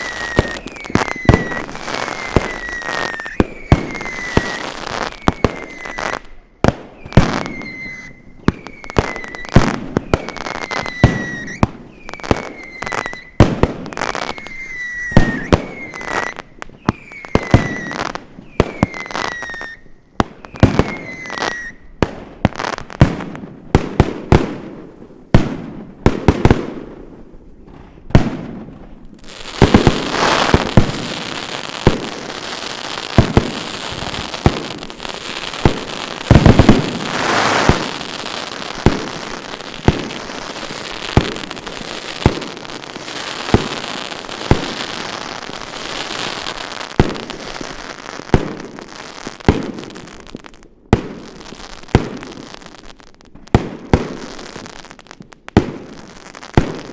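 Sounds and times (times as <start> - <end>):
firework falling whistle: 0.0 - 21.9, 29.4 - 47.8
firework bangs: 0.0 - 27.1, 27.7 - 56.9
dense firework crackle: 0.0 - 56.9.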